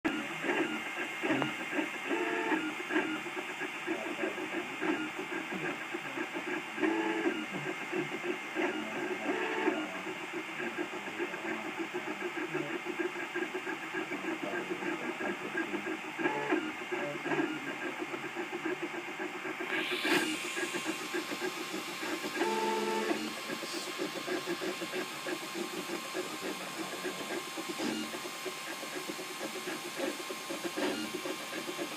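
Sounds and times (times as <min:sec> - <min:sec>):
printer stepper motors buzzing: 0:00.1 - 0:31.9
short pitched motor whines: 0:19.6 - 0:23.3.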